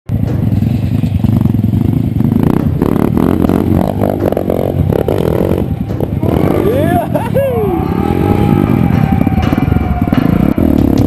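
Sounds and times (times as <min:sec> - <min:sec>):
clattering: 0:00.1 - 0:07.2
vehicle engine revving: 0:00.1 - 0:11.0.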